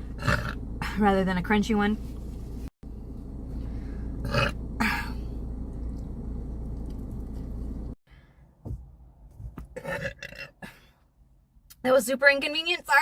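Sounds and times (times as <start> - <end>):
low room hum: 0.0 - 9.5.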